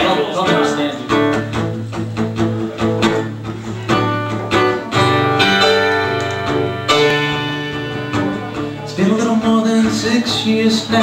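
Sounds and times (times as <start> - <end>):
strummed guitar chords: 0.0 - 11.0
piano: 3.9 - 11.0.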